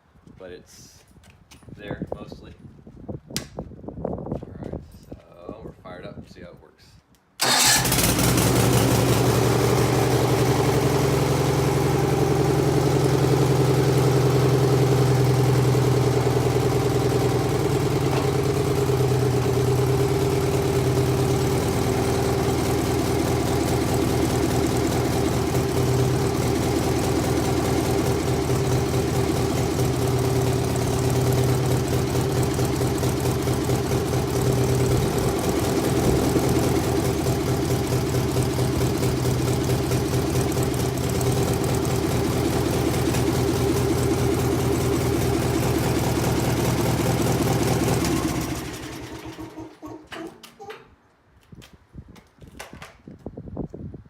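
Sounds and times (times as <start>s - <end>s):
gas engine running: 7.4s - 49.8s.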